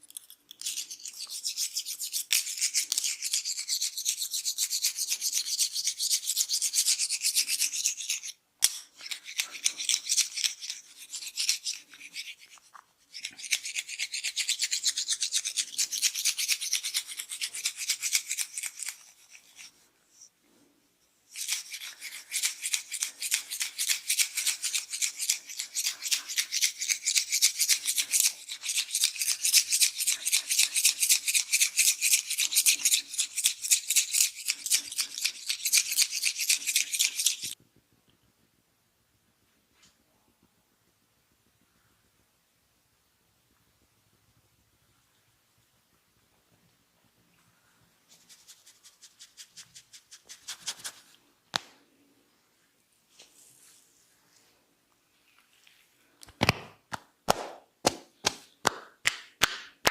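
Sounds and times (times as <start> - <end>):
fingers scratching through hair: 0.1 - 19.9, 21.3 - 37.6, 48.1 - 51.2.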